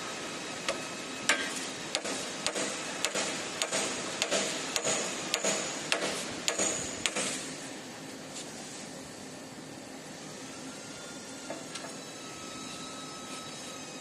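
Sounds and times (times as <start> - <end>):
plasma cutter hiss: 0.0 - 7.8.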